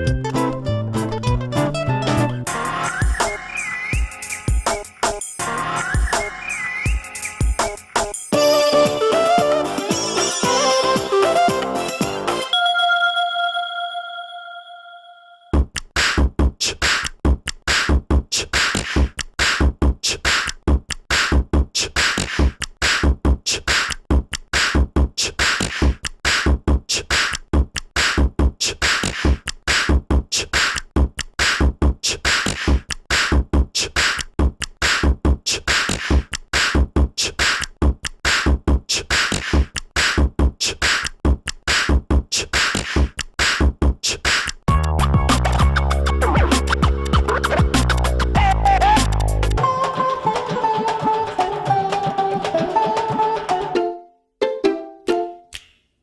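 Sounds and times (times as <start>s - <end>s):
electronic drum beat ringtone: 2.2s - 13.7s, 44.7s - 51.1s.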